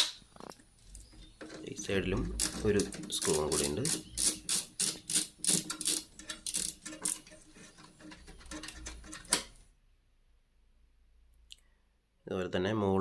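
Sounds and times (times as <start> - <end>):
screwdriver clicking on screw: 2.2 - 9.5.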